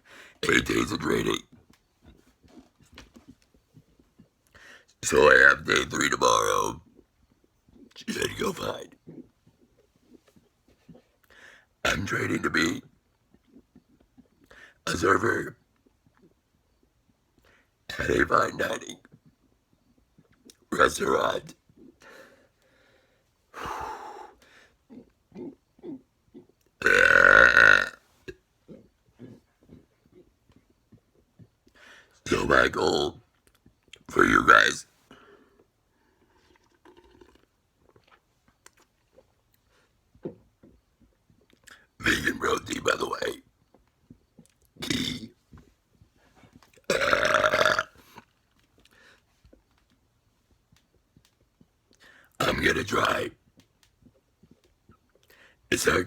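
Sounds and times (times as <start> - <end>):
man belching: 25.0 - 28.4, 41.7 - 43.4, 44.8 - 45.4, 46.8 - 48.2, 52.4 - 53.4.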